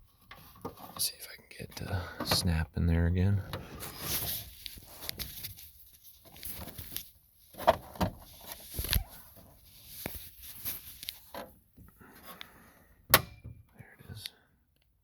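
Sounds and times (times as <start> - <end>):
handling rustle: 3.6 - 11.6.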